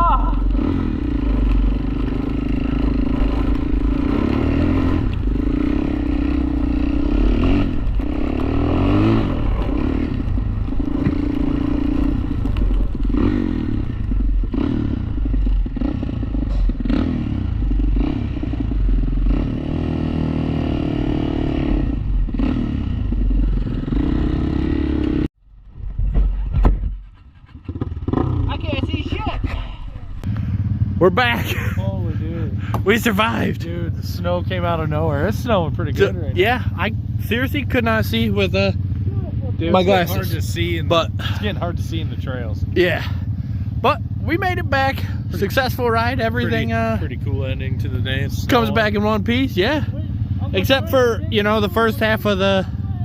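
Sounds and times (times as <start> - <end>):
quad bike engine running: 0.0 - 53.0
rattling over a trail: 0.0 - 53.0.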